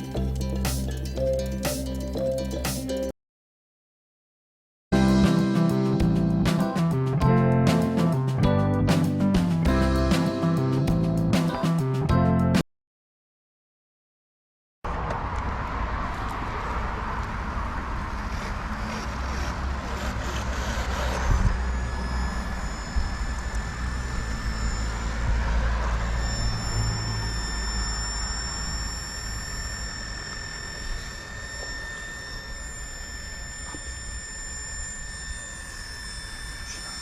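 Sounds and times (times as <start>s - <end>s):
drill motor whining: 18.2s - 37.0s.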